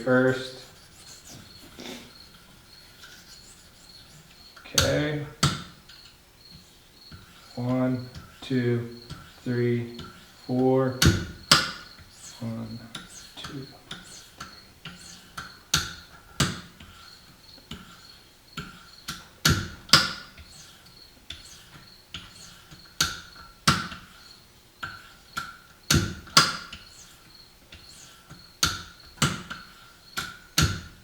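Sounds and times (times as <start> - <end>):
sharpening stone strokes on blade: 0.5 - 4.4
sharp clicks and knocks: 0.7 - 18.0, 24.8 - 27.0, 27.6 - 31.0.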